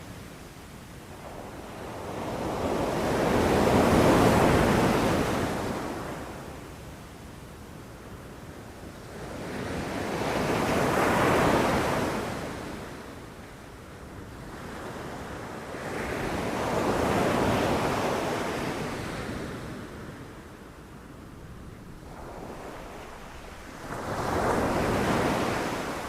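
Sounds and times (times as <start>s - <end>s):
sea waves breaking on shore: 0.9s - 6.5s, 15.7s - 26.0s.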